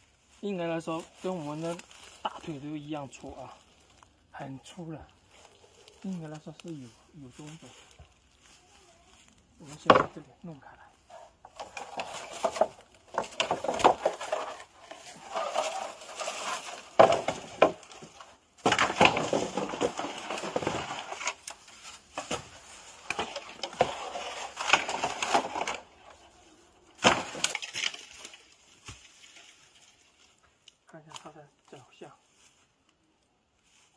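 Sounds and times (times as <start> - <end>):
dry leaves and twigs crackling: 0.0 - 33.9.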